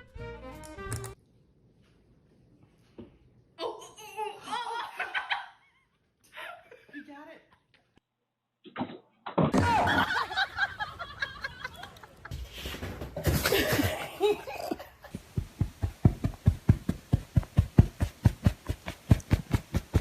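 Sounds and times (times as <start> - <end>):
people laughing: 9.6 - 12.4, 13.4 - 15.3.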